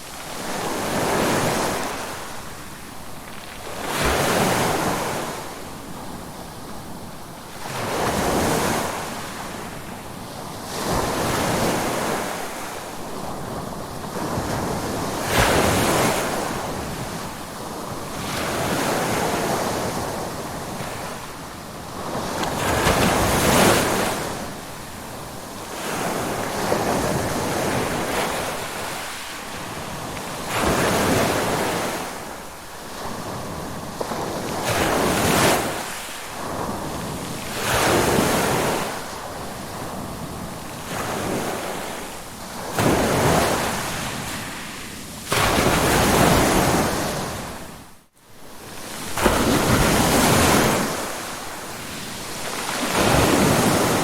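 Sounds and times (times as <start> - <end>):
ocean waves breaking: 25.7 - 47.9, 48.7 - 54.0.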